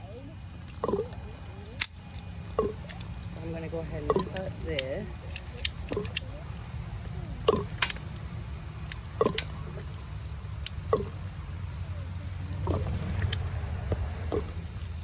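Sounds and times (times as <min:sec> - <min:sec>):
high insect buzz: 0:00.0 - 0:15.0
pipe cutter clicks: 0:04.2 - 0:06.3, 0:07.5 - 0:08.1.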